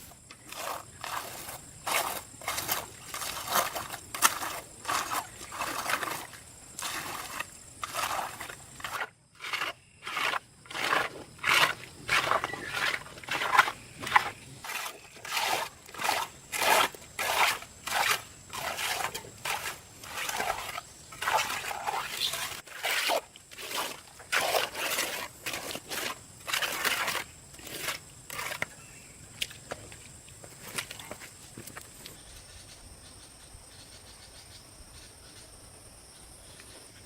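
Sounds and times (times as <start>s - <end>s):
rhythmic crunching scraping strokes: 0.0s - 28.7s.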